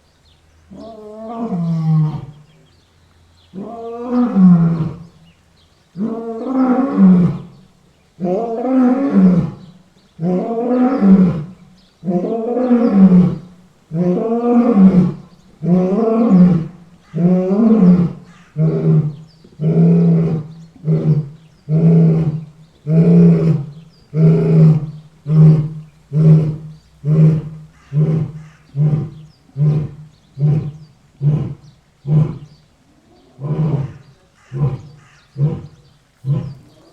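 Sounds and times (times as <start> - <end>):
lion grunting: 8.2 - 32.6, 33.2 - 36.9
lion roaring: 8.2 - 36.9.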